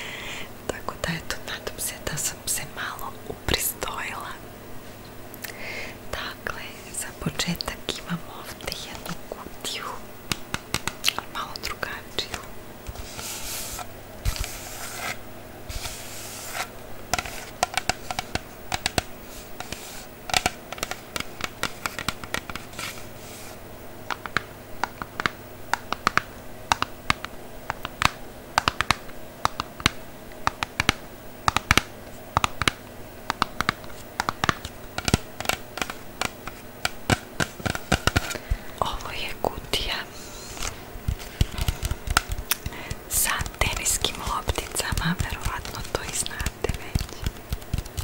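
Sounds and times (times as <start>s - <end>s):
fingernails tapping on a box: 24.1s - 38.4s.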